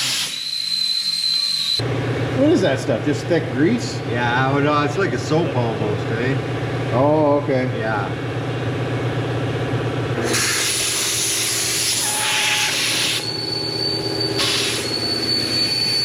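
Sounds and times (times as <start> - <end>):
thin high whistle: 0.0 - 1.8, 10.2 - 16.0
machinery humming: 0.0 - 16.0
compressed air hissing into tire: 10.2 - 13.2, 14.4 - 14.9.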